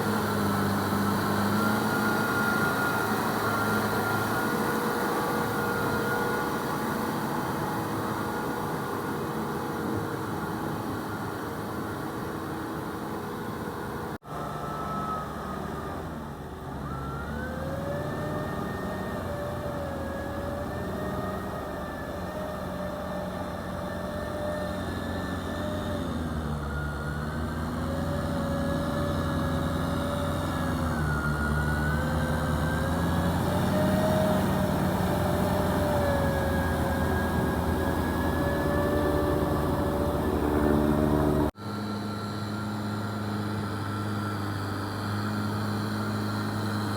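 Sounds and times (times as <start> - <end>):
tractor diesel engine under load: 0.0 - 46.9
wavering whine: 26.4 - 46.9.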